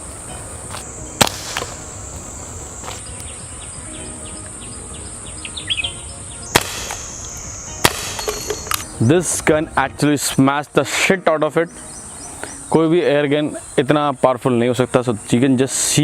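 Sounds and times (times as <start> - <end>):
high insect drone: 0.0 - 16.0
bb pistol shots: 1.2 - 1.8, 6.5 - 7.2, 7.8 - 8.9.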